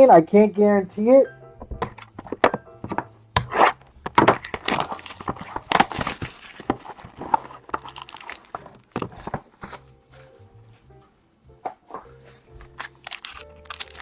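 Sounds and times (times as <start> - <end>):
plastic wrapping crinkling and tearing: 3.6 - 9.9, 12.6 - 14.0.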